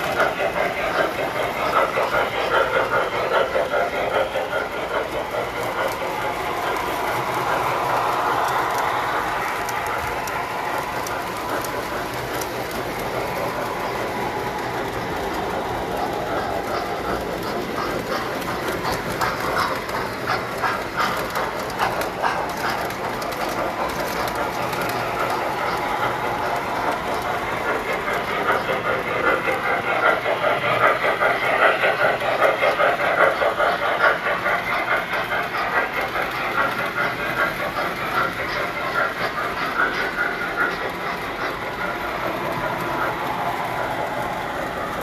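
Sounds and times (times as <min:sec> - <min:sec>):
model trains clattering on track: 0:00.0 - 0:45.0.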